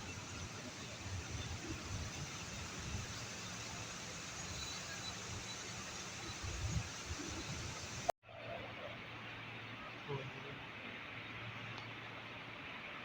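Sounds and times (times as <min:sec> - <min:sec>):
rain hissing: 0:00.0 - 0:08.1.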